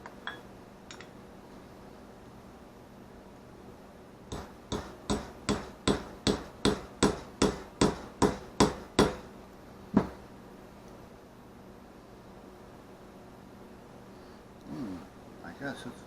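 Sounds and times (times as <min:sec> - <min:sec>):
small hammer tapping metal: 0:04.3 - 0:09.2.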